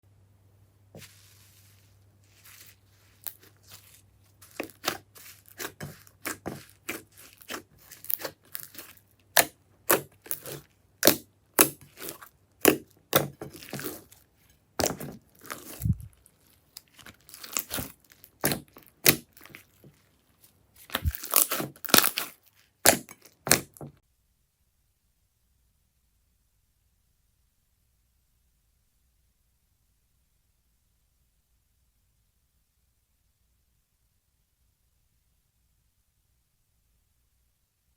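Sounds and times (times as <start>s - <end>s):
slime squelching and crackling: 1.0s - 23.8s.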